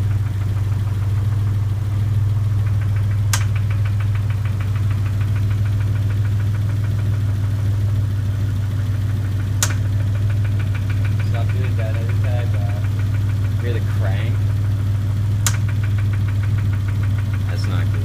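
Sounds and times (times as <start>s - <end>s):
car engine idling with ticking: 0.0s - 18.0s
sharp click: 2.8s - 6.1s, 9.6s - 13.6s, 15.4s - 17.5s.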